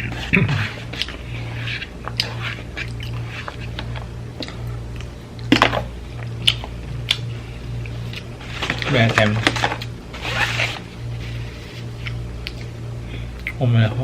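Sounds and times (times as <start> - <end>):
steady low hum: 0.0 - 14.0
wet chewing and mouth smacks: 1.8 - 8.3, 12.0 - 12.7.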